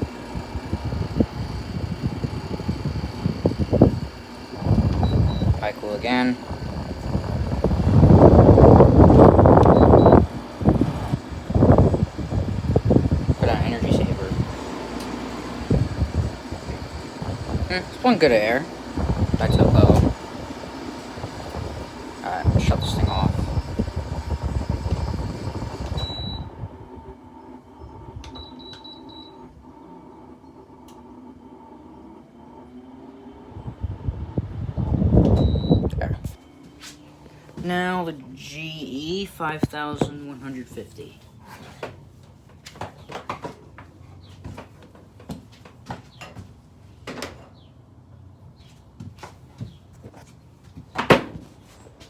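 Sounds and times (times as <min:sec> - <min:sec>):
air conditioner fan running: 0:00.0 - 0:52.0
control panel beeps: 0:04.9 - 0:05.6, 0:09.6 - 0:10.2, 0:25.9 - 0:26.5, 0:28.3 - 0:29.4, 0:35.3 - 0:35.9
equipment handling knocks and clicks: 0:41.8 - 0:47.5.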